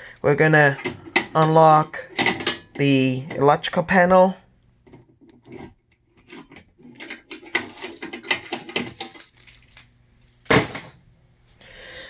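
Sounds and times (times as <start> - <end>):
keys jangling: 5.4 - 10.9.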